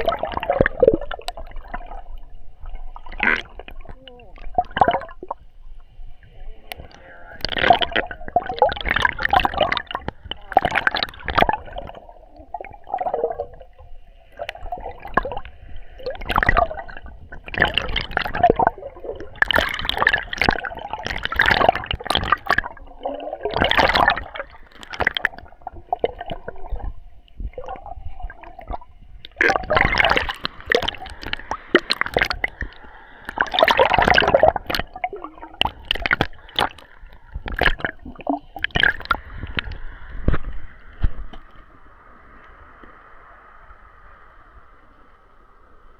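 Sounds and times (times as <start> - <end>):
water splashing against plastic housing: 3.0 - 5.4, 6.6 - 12.0, 16.0 - 41.5.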